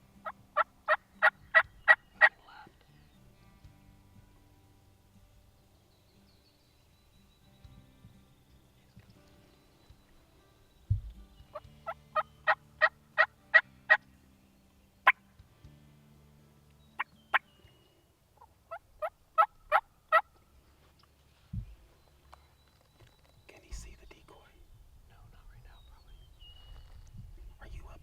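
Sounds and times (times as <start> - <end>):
low thump: 10.9 - 11.2
turkey yelping: 18.4 - 20.3.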